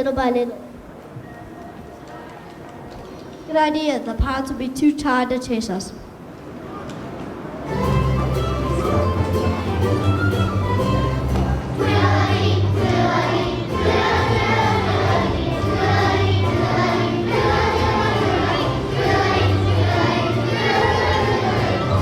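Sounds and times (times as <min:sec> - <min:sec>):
children's choir singing: 0:07.7 - 0:22.0
instrumental accompaniment: 0:07.7 - 0:22.0.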